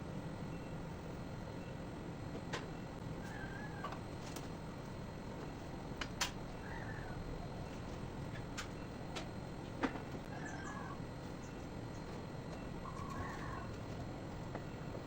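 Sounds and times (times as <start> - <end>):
faint short bird calls: 12.8 - 13.7.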